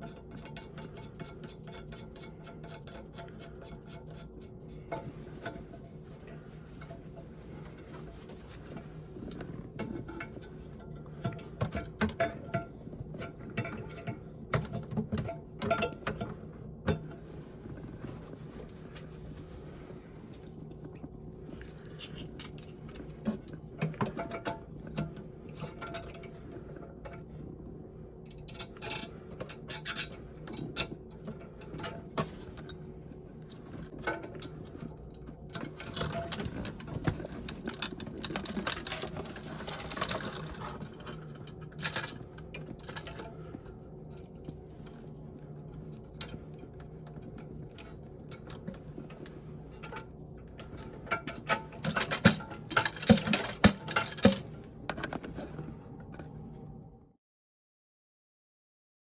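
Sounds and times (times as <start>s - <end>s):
low steady hum: 0.0s - 57.2s
small hard parts clattering: 33.9s - 44.3s, 46.0s - 55.2s.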